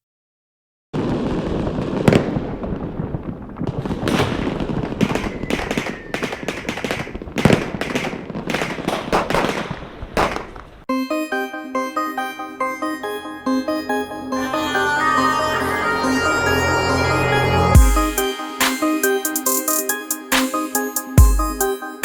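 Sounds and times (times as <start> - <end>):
pyrotechnic crackling with sharp pops: 1.0 - 10.9.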